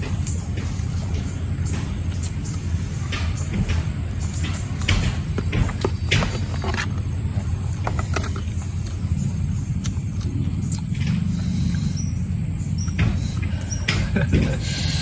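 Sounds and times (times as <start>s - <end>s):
chewing and crunching fried chicken: 2.1s - 11.8s.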